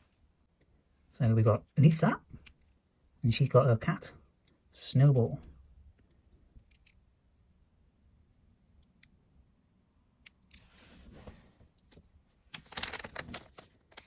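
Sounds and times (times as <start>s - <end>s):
soft rustle: 10.6s - 13.8s
plastic bag crinkling and clicking: 12.5s - 14.0s.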